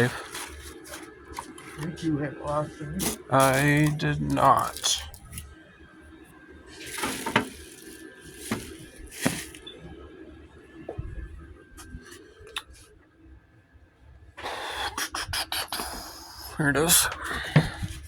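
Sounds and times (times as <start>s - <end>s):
rustles and scrapes: 0.0s - 1.9s, 6.8s - 9.7s
faint steady hum: 0.0s - 18.0s.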